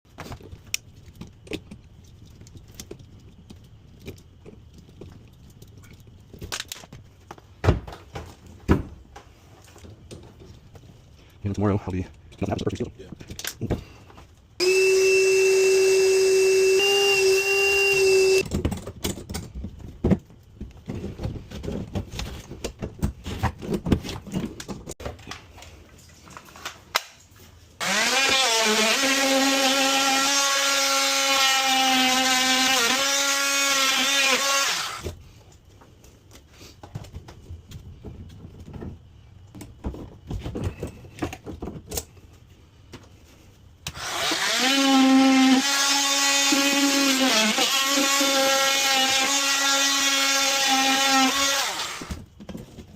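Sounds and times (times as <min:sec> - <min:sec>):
handheld power tool running: 0:14.6 - 0:18.4, 0:27.8 - 0:35.0, 0:43.9 - 0:52.1.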